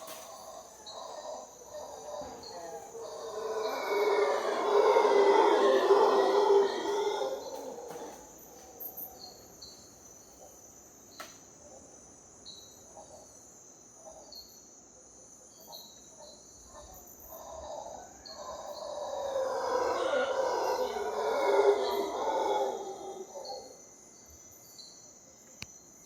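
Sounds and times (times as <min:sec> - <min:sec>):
howler monkeys howling: 0:00.0 - 0:09.7, 0:16.2 - 0:23.8.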